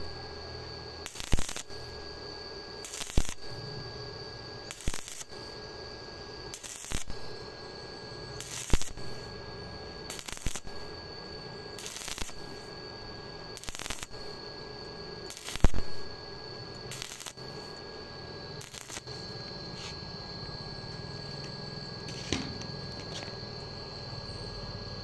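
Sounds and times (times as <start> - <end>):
steady high whine: 0.0 - 25.0
arc welding bursts: 1.1 - 1.8, 2.8 - 3.5, 4.7 - 5.3, 6.6 - 7.2, 8.4 - 9.4, 10.1 - 10.9, 11.8 - 12.7, 13.6 - 14.4, 15.3 - 16.2, 16.9 - 17.9, 18.6 - 19.9, 21.4 - 23.4.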